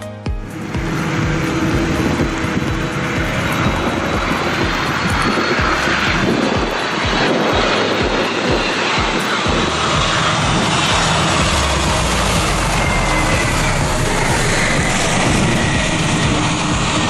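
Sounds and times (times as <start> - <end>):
airliner engines rushing: 0.1 - 17.0
faint high whine: 0.5 - 17.0.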